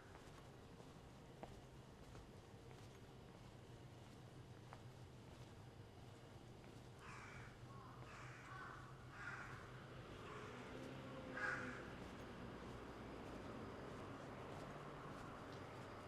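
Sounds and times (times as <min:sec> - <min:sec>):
faint low hum: 0:00.0 - 0:16.0
crow cawing: 0:07.0 - 0:12.0.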